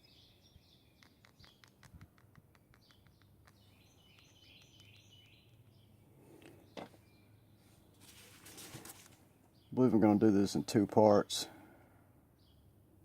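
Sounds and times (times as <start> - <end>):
faint birds chirping: 0.0 - 13.0
small clicks: 1.0 - 5.8.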